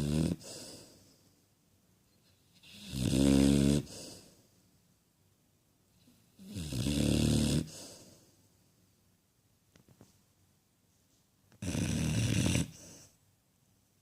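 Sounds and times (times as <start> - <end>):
dog snoring: 0.0 - 1.0, 2.6 - 4.3, 6.0 - 8.1, 11.6 - 13.1
soft breath: 0.4 - 1.5, 3.8 - 4.7, 7.6 - 8.6, 12.7 - 13.2.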